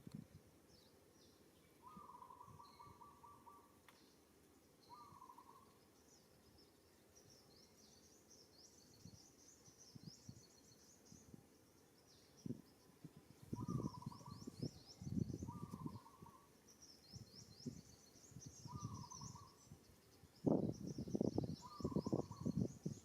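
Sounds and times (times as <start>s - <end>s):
birds chirping and twittering: 0.6s - 23.0s
buzzy bird trills: 1.8s - 3.8s, 4.8s - 5.7s, 13.4s - 23.0s.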